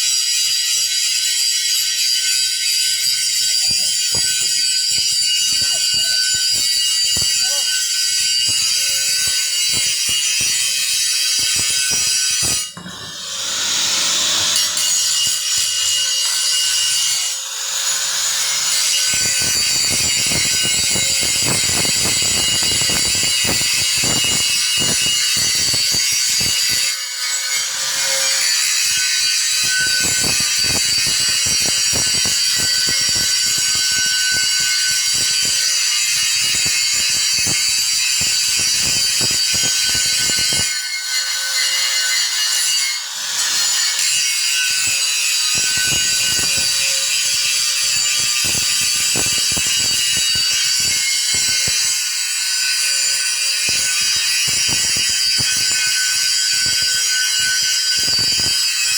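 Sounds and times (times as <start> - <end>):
welding arc crackling: 3.3 - 17.1, 18.3 - 26.9, 29.4 - 40.7, 44.8 - 51.9, 53.6 - 58.7.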